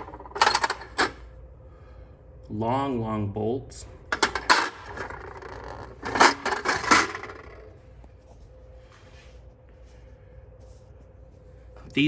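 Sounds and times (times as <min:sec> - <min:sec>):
metal bolts clinking and rattling: 0:00.0 - 0:01.2, 0:04.1 - 0:07.7.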